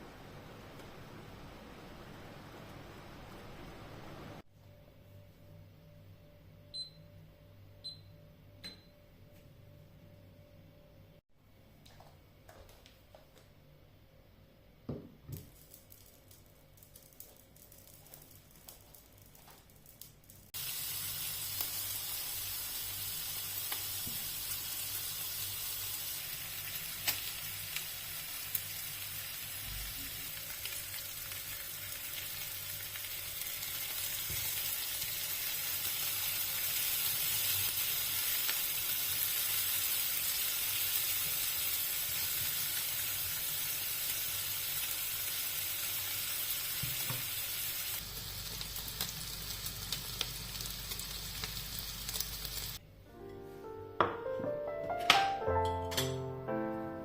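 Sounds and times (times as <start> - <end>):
food sizzling in a pan: 20.5 - 52.8.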